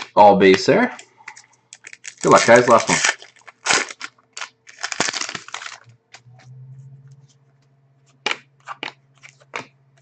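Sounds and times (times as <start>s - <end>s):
foil wrapper crinkling: 1.2s - 6.2s.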